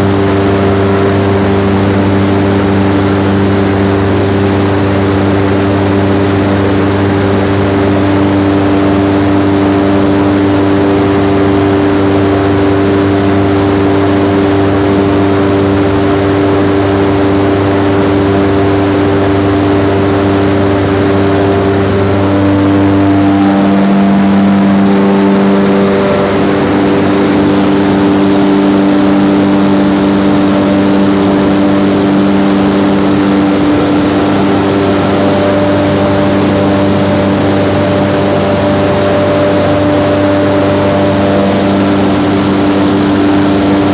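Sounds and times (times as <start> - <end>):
ventilation fan droning: 0.0 - 43.9
rushing air: 19.2 - 43.9.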